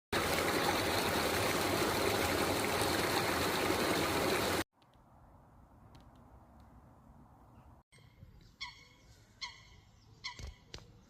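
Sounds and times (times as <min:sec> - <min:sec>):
stream water rushing: 0:00.1 - 0:04.6.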